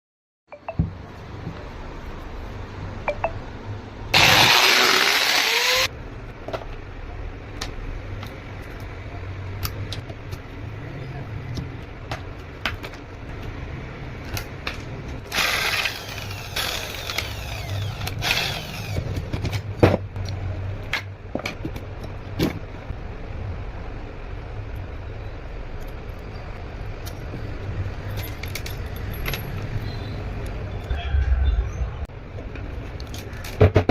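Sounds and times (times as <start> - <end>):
angle grinder whining: 4.2 - 5.9, 15.3 - 19.0.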